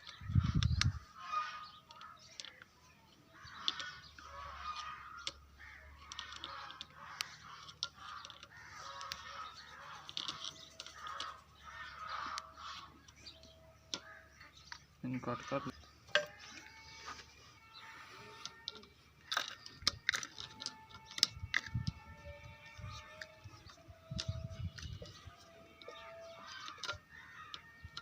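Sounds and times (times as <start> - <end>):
harsh bird calls: 0.0 - 28.0
sharp clicks: 3.4 - 14.9.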